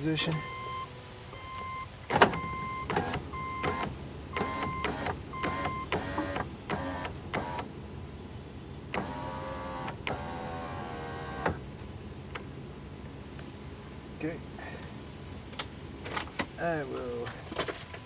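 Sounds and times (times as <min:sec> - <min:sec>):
car warning chime beeping: 0:00.0 - 0:07.6
power window motor: 0:00.3 - 0:07.8, 0:08.9 - 0:11.7.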